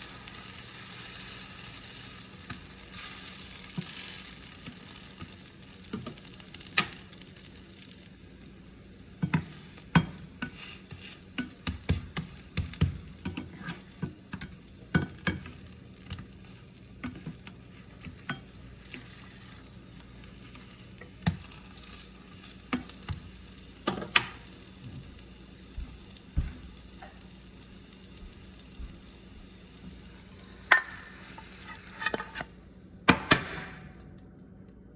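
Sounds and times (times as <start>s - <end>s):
pancakes sizzling in oil: 0.0s - 33.0s
utensil scraping a pan: 9.2s - 15.5s, 30.6s - 32.5s.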